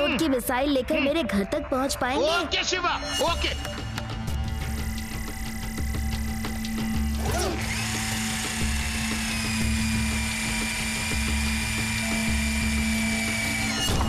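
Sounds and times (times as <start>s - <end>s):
background music: 0.0s - 14.0s
high-pitched mechanical whine: 4.5s - 14.0s.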